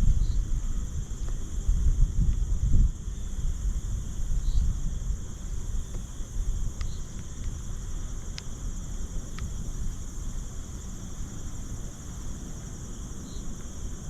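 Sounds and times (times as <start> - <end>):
insects trilling: 0.0 - 14.0
faint ticks: 5.8 - 8.6, 9.2 - 9.6.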